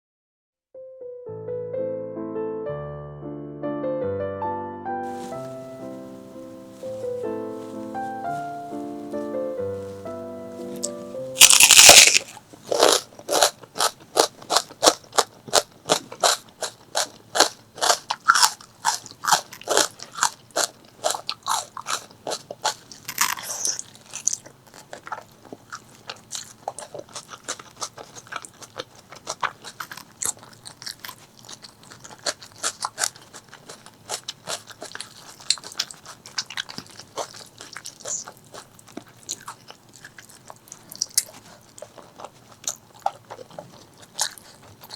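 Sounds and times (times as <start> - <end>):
crunchy chewing: 5.0 - 44.9
crunchy bite: 10.8 - 44.9.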